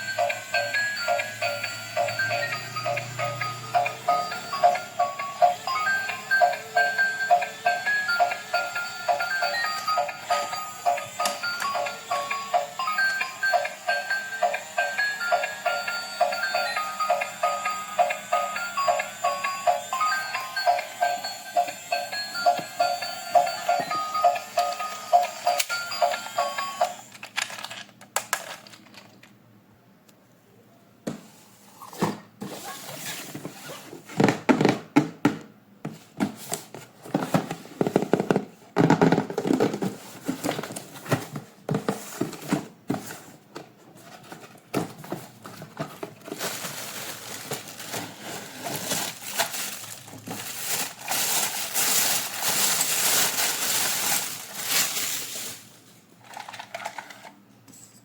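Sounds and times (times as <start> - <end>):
toy packaging crinkling: 23.4 - 29.4, 44.2 - 57.4.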